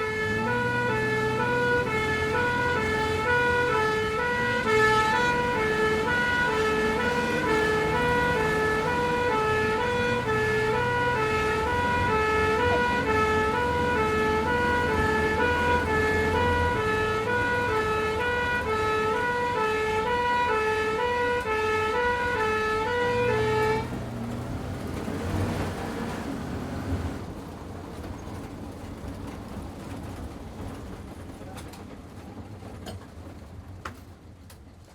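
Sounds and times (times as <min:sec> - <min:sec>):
ambulance two-tone siren: 0:00.0 - 0:26.7
vehicle engine running: 0:00.0 - 0:31.4.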